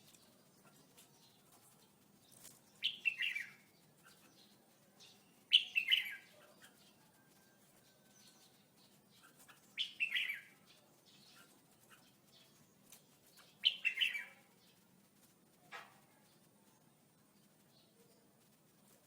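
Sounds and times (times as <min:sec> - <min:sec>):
bulbul singing: 0:00.0 - 0:14.9.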